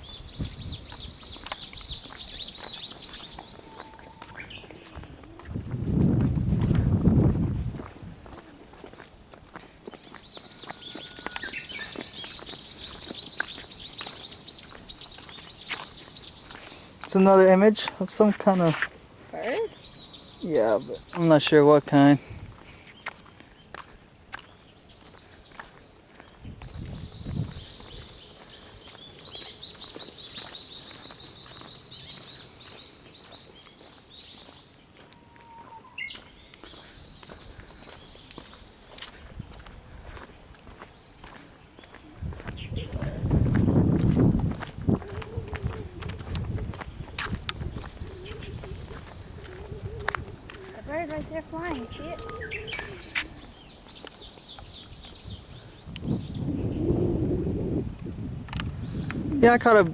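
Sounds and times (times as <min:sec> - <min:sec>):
songbird chirping: 0:00.0 - 0:05.5, 0:07.2 - 0:57.4, 0:58.2 - 0:59.9.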